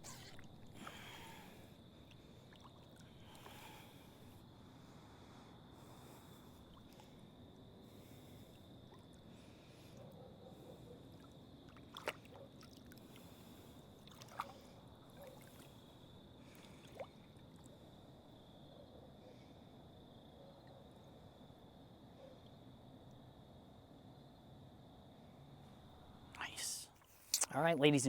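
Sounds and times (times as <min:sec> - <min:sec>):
faint trickling and lapping water: 0:00.0 - 0:23.9, 0:26.9 - 0:27.5
sharp clicks or small splashes: 0:11.7 - 0:12.8.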